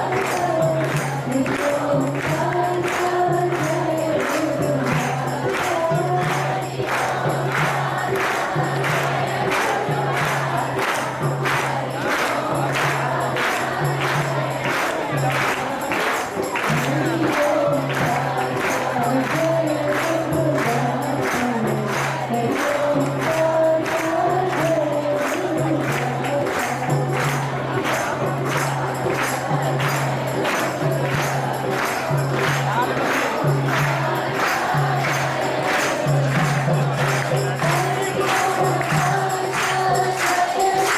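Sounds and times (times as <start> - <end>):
devotional singing: 0.0 - 40.9
jingling hand percussion: 0.0 - 40.9.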